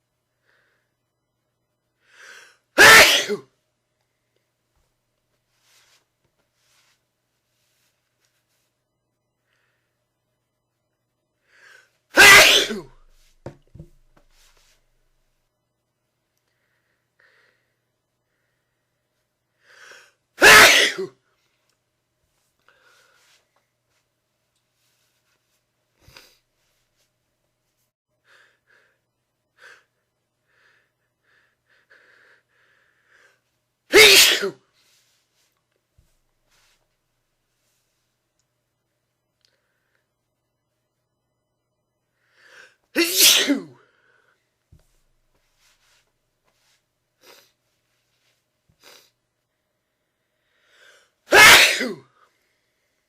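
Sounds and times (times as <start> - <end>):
person breathing and gasping: 2.0 - 2.6, 50.4 - 51.2
person sneezing: 2.2 - 3.6, 11.6 - 14.7, 19.8 - 21.2, 33.9 - 34.7, 42.5 - 43.8, 47.2 - 47.6, 48.8 - 49.2, 50.9 - 52.2
faint short breaths: 50.1 - 51.2.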